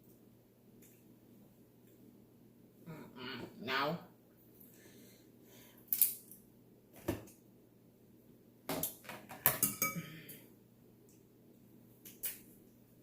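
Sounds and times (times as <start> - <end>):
utensils and dishes clattering: 9.2 - 10.0.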